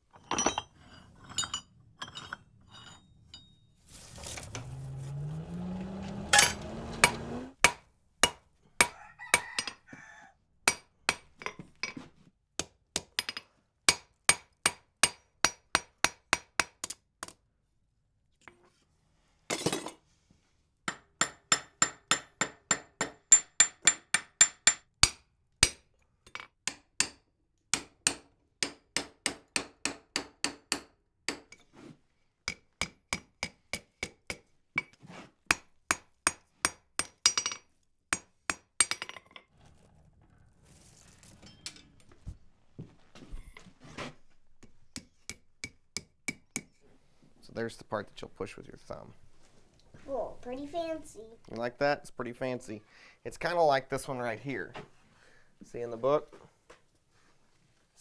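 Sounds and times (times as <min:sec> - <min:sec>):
hammer striking iron on anvil: 0:06.2 - 0:09.0, 0:10.7 - 0:11.5, 0:35.5 - 0:37.6.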